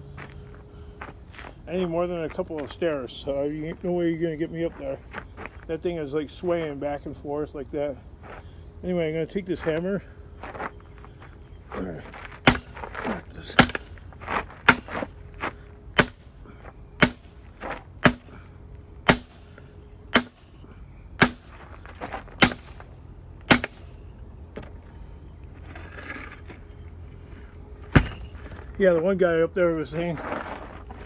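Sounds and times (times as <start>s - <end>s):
hammer striking metal: 12.5s - 13.0s, 13.6s - 14.1s, 14.7s - 15.2s, 16.0s - 16.4s, 17.0s - 18.5s, 19.1s - 21.8s, 22.4s - 24.1s, 28.0s - 28.3s.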